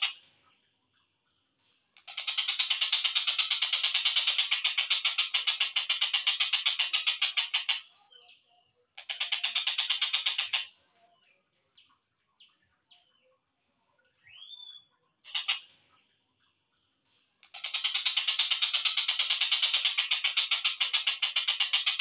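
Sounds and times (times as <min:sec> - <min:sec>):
kingfisher rattling chatter: 0:09.0 - 0:10.7.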